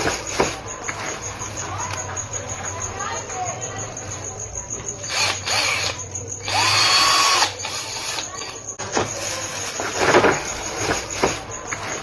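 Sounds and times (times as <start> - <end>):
power drill motor whine: 5.0 - 11.4.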